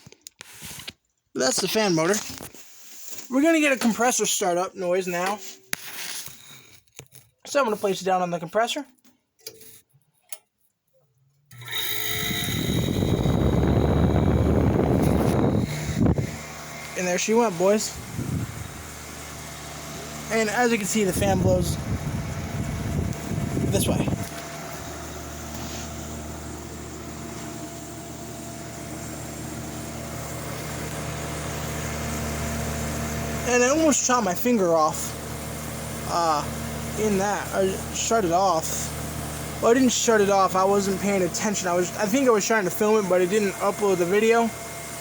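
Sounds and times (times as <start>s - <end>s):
dehumidifier compressor and fan humming: 11.6s - 45.0s.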